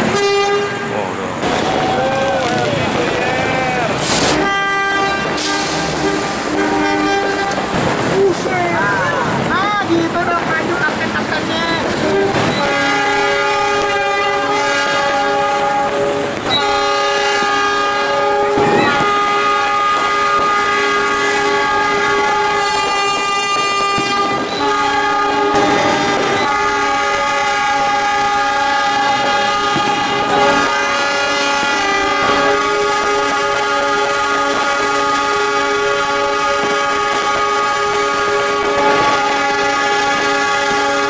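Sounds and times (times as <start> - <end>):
locomotive air horn chords: 0.0 - 1.2, 3.8 - 8.1, 11.9 - 41.0.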